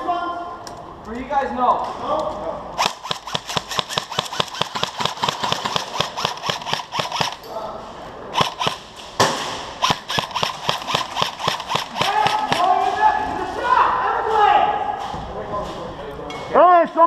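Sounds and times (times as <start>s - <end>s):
airsoft guns firing: 2.8s - 7.4s, 8.4s - 13.0s.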